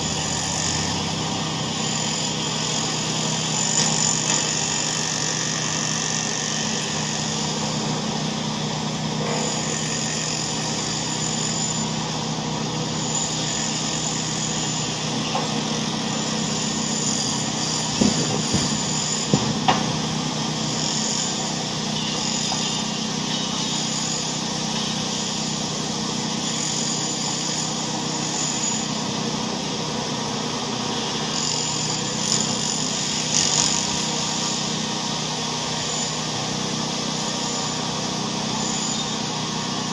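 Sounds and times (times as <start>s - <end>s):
machine droning: 0.0s - 39.9s
short knocks and clicks: 17.9s - 20.0s.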